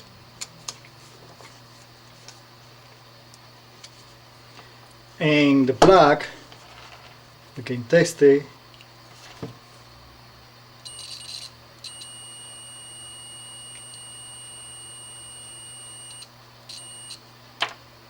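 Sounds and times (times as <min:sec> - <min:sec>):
multimeter continuity beeps: 0:10.8 - 0:17.2.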